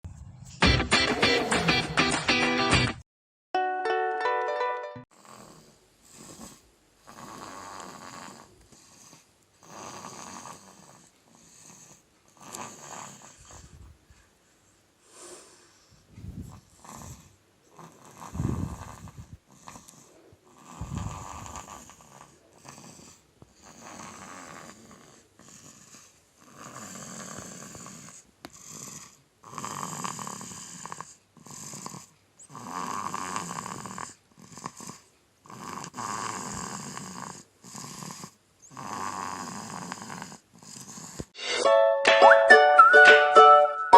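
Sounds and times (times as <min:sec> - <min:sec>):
baby snoring: 0:05.2 - 0:13.8, 0:15.1 - 0:41.4.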